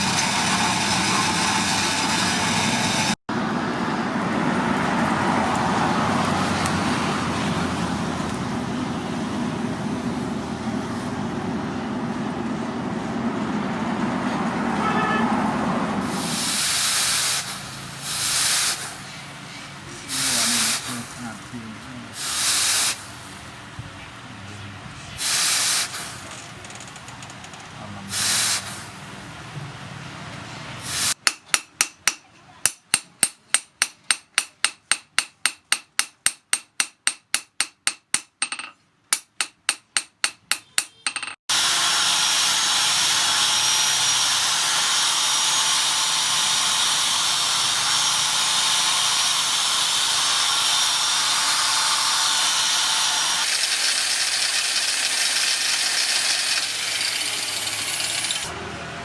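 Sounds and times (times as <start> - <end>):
power tool running: 0.0 - 3.2, 20.1 - 23.3, 41.5 - 58.7
hammer striking steel: 31.2 - 41.4.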